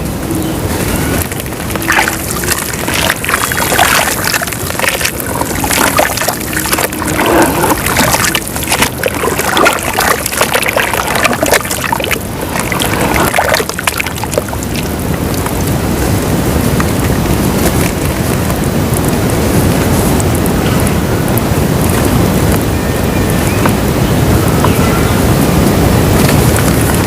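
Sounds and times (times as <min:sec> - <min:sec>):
dirt crackling in water: 0:00.0 - 0:22.7, 0:25.6 - 0:27.0
water sloshing: 0:00.8 - 0:15.8.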